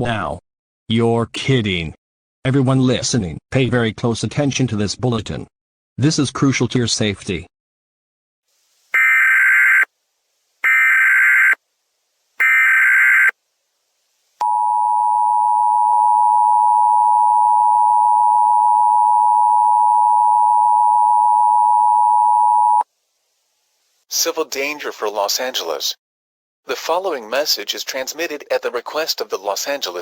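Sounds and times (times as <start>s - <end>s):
data burst tones: 9.0s - 9.9s, 10.6s - 11.6s, 12.4s - 13.3s.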